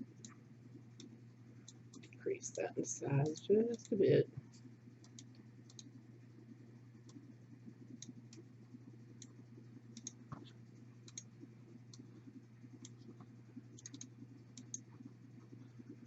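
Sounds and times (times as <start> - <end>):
steady low hum: 0.0 - 16.0
computer mouse clicking: 0.2 - 2.2, 5.0 - 6.0, 7.0 - 8.5, 9.1 - 16.0.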